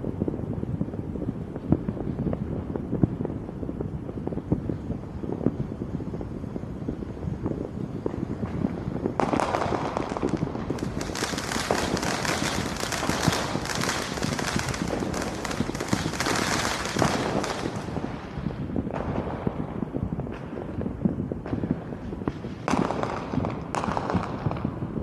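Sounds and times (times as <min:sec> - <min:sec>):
fireworks crackling: 0:00.0 - 0:25.0.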